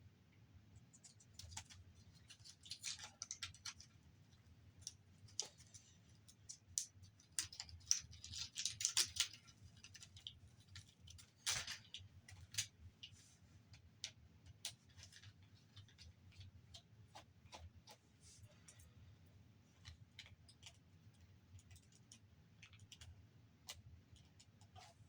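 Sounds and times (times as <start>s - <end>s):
small parts clicking and scraping: 0.9s - 16.8s.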